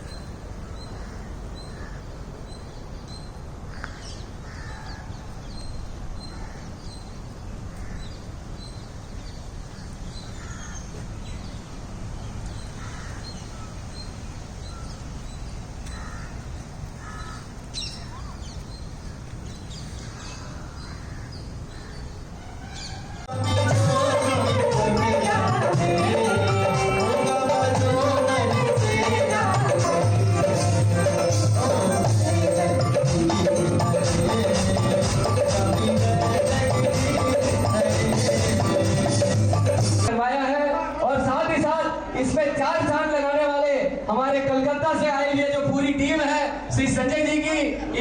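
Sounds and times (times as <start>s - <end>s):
lower bird calls: 0.0s - 23.3s
bird chirping high: 17.1s - 23.3s.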